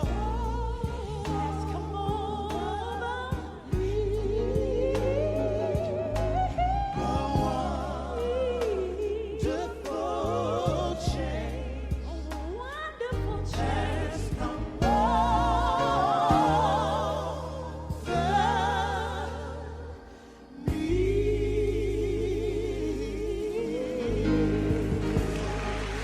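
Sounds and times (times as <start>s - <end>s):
solo singer: 0.0s - 19.6s
bass line: 0.0s - 26.0s.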